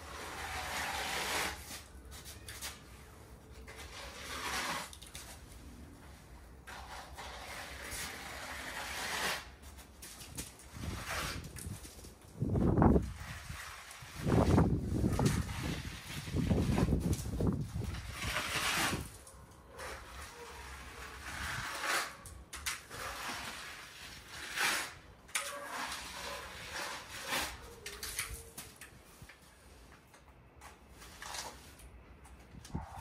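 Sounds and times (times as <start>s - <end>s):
trowel scraping plaster: 0.0s - 29.3s, 31.0s - 31.9s.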